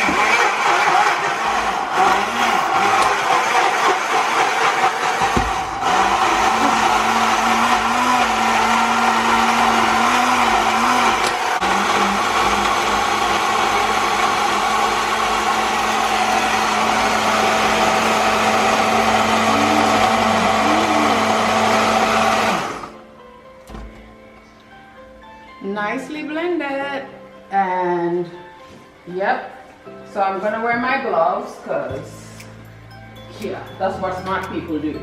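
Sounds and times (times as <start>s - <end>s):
electric blender running: 0.0s - 23.0s.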